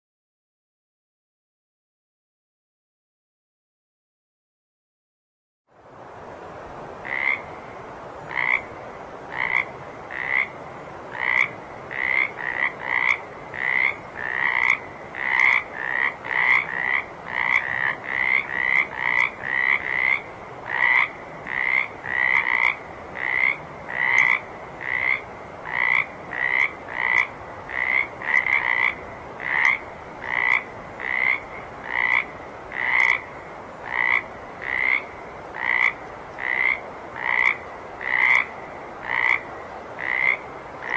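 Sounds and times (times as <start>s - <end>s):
steady background hiss: 5.7s - 40.9s
frog croaking: 7.0s - 7.5s, 8.3s - 8.7s, 9.3s - 40.9s.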